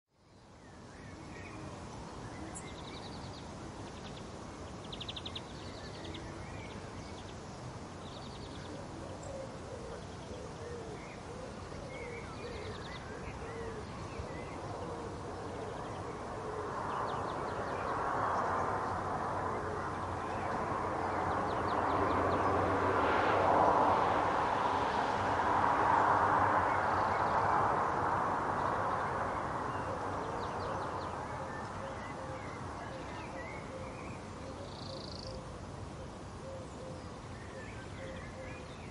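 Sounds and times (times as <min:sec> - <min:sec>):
broad rushing noise: 0:12.9 - 0:34.4
small birds chirping: 0:26.6 - 0:38.9.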